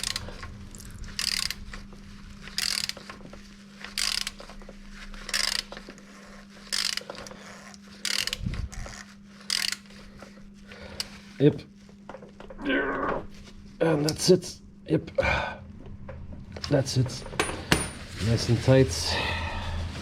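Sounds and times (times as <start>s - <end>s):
ratchet wrench clicking: 0.0s - 1.6s, 2.5s - 3.1s, 3.9s - 4.5s, 5.3s - 5.8s, 6.6s - 9.9s
steady low hum: 0.0s - 20.0s.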